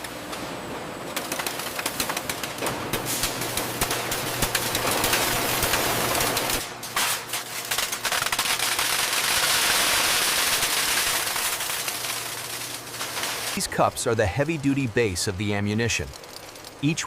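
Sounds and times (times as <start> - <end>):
factory machinery clattering: 0.0 - 9.1
low machine hum: 10.7 - 17.0
dense hissing noise: 13.3 - 16.2.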